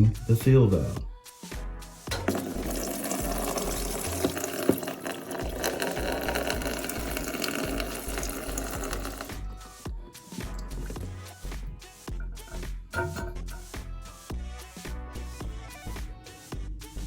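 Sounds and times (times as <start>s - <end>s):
water gushing from toilet tank: 2.1s - 11.7s.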